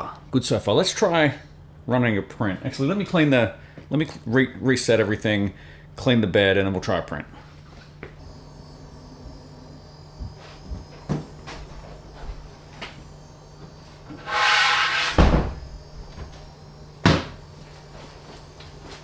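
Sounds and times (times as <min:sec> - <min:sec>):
steady low hum: 0:07.2 - 0:19.0
thump: 0:15.1 - 0:15.6.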